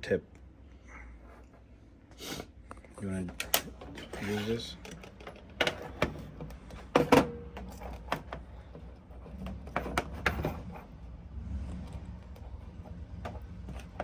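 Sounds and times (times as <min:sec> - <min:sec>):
tools clicking and clattering: 0:03.2 - 0:10.9.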